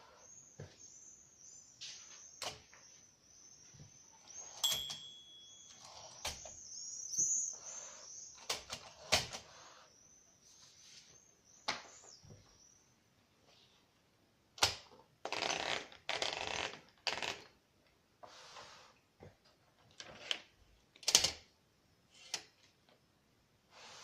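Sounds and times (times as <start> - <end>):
typewriter bell ringing: 4.5 - 6.2.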